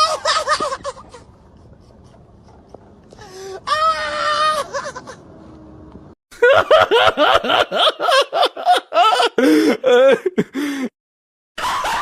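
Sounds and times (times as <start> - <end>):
person laughing hard: 0.0 - 1.4, 4.4 - 5.2, 6.4 - 10.9, 11.6 - 12.0.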